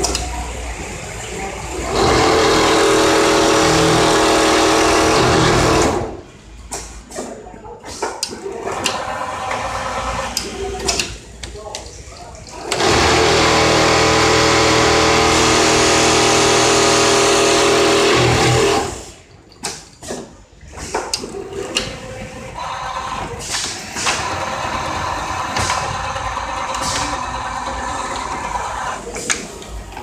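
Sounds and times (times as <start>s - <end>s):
low machine running: 0.6s - 6.2s, 12.6s - 19.1s
sewing machine running: 1.6s - 6.2s, 12.6s - 19.2s, 24.0s - 29.1s
mechanical clicks and clacks: 7.9s - 30.0s.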